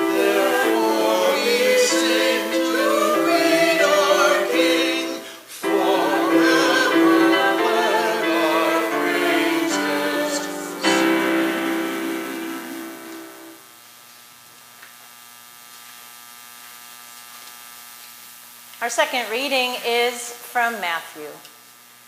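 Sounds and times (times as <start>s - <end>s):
choir singing: 0.0s - 13.6s
faint electrical hum: 0.0s - 22.0s.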